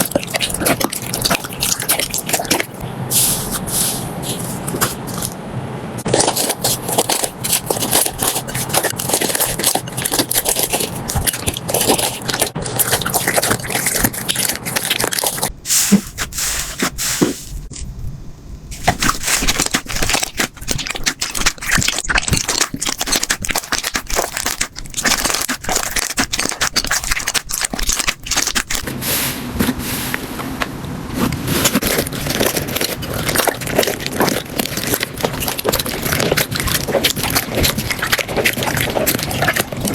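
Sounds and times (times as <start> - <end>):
slime squeezed crackling and popping: 6.0 - 15.5, 18.8 - 28.9.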